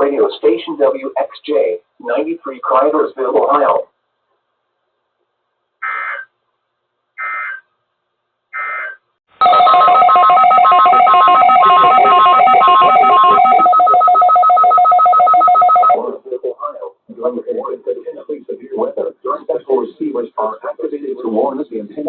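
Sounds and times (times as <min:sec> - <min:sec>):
continuous electronic alert tone: 0:08.6 - 0:16.0.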